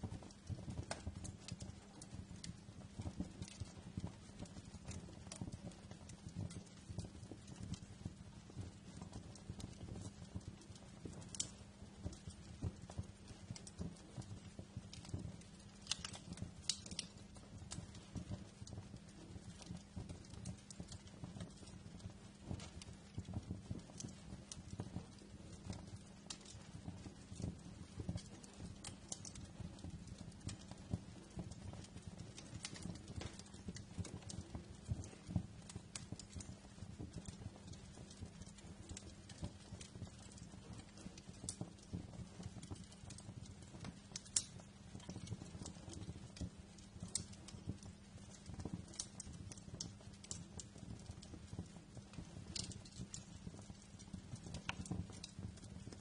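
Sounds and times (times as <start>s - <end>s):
sharp pops from fire: 0.0s - 56.0s
wood fire crackling: 0.0s - 56.0s.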